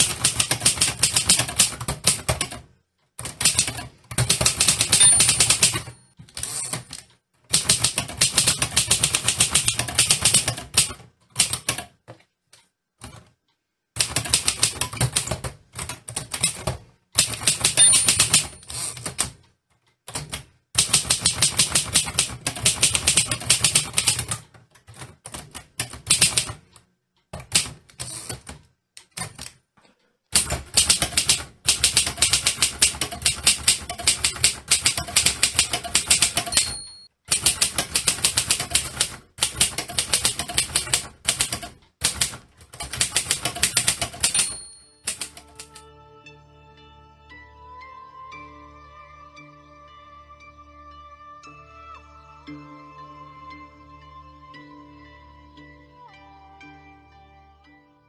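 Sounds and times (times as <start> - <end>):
manual typewriter typing: 0.0 - 12.1, 14.0 - 19.4, 20.0 - 29.7, 30.3 - 45.8
typewriter margin bell: 3.4 - 7.0, 17.2 - 19.2, 30.8 - 45.7.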